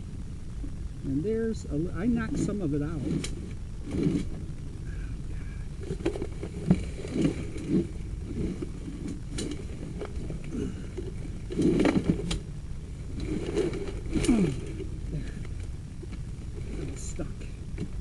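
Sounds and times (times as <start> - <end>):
low steady rumble: 0.0 - 18.0.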